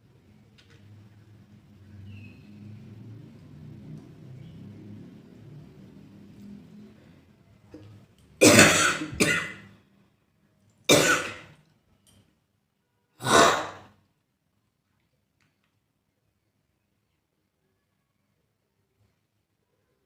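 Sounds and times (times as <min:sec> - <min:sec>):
person coughing: 0:08.4 - 0:09.7, 0:10.9 - 0:11.5, 0:13.2 - 0:13.9.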